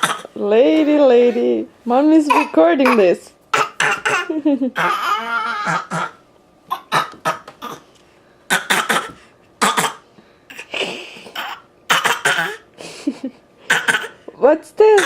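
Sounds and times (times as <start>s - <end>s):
toddler making playful coughs: 0.0s - 0.4s, 2.3s - 7.9s, 8.5s - 12.7s, 13.7s - 14.2s.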